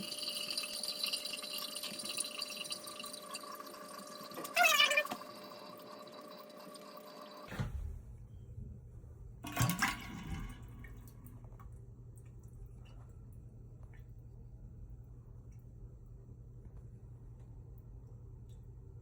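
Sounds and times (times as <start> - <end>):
water running in toilet: 0.0 - 8.0, 9.4 - 16.6
low steady hum: 5.1 - 19.0.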